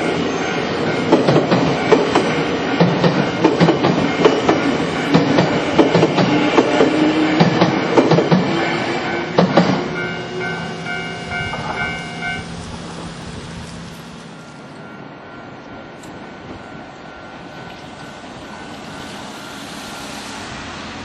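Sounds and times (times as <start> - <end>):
level crossing warning bell: 0.0 - 7.9, 8.6 - 12.6, 14.2 - 19.7
train wheels clacking over rail joints: 0.9 - 8.6, 9.2 - 10.0.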